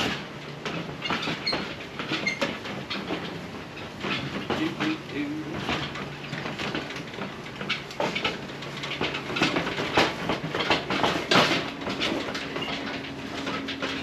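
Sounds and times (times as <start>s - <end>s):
equipment clattering and knocking: 0.0s - 14.0s.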